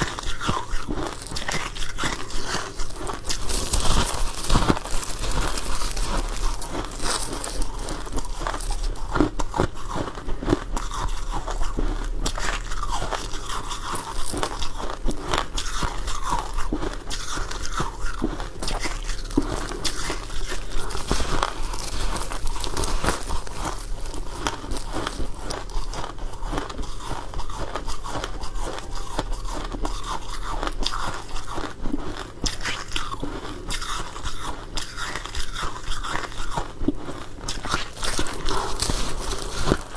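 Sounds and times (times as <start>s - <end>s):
chewing crunchy frost: 0.0s - 39.9s.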